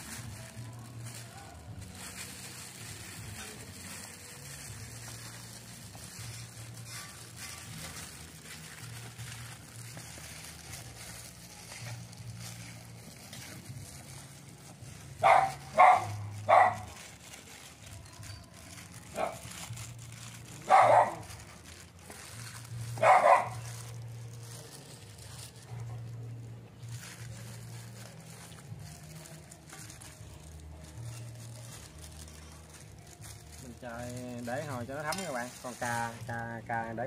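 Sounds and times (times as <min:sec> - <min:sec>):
dog barking: 0:15.2 - 0:17.0, 0:19.2 - 0:19.5, 0:20.7 - 0:21.4, 0:23.0 - 0:23.8.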